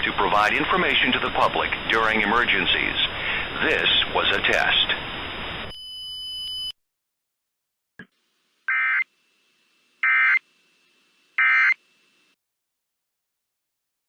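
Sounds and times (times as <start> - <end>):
buzzy alert data beeps: 11.4 - 11.8.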